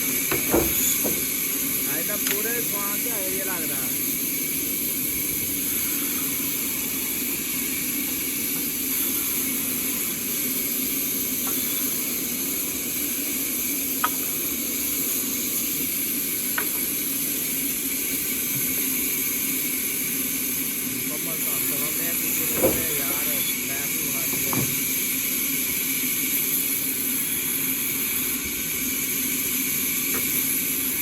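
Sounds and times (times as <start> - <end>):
sawmill saw cutting log: 0.0 - 4.2, 20.9 - 25.8.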